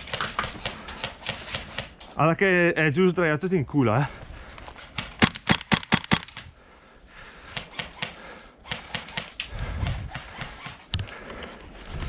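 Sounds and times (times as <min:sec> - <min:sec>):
airsoft gunshots clacking: 0:00.0 - 0:02.0, 0:05.0 - 0:06.5, 0:07.5 - 0:10.9.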